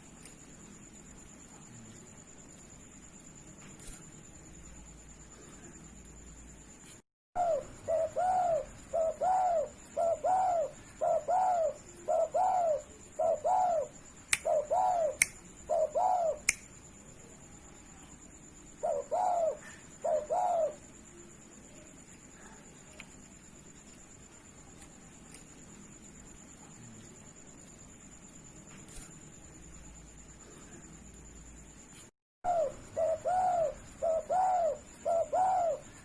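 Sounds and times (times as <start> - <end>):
dove cooing: 7.4 - 16.4, 18.8 - 20.8, 32.5 - 36.0
sharp clicks: 16.4 - 16.7.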